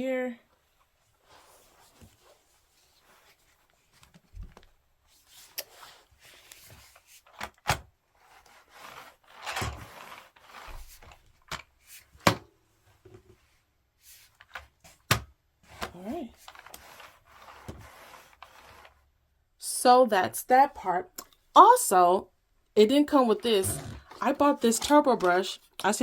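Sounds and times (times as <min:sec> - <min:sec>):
plastic parts rubbing and scraping: 0:08.2 - 0:12.3, 0:15.6 - 0:19.1, 0:23.2 - 0:26.0.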